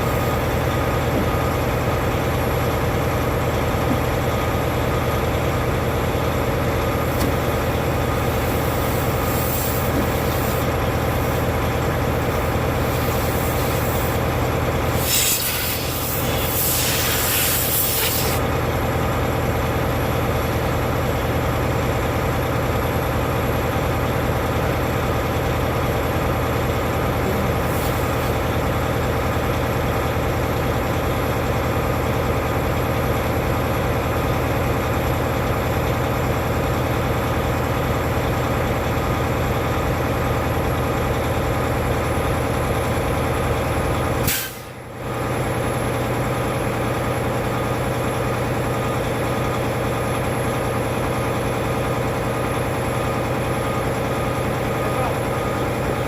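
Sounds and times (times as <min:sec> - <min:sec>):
diesel truck engine idling: 0:00.0 - 0:56.0.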